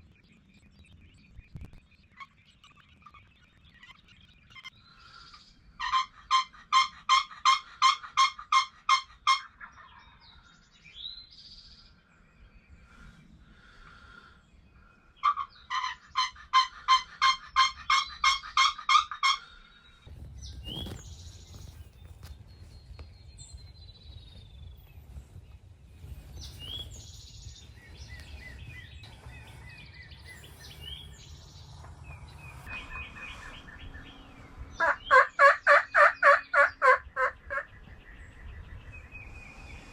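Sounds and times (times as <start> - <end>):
small birds chirping: 0.0 - 39.9
turkey yelps: 5.8 - 10.2, 15.2 - 19.5, 34.8 - 37.7
low rumble: 20.0 - 35.1.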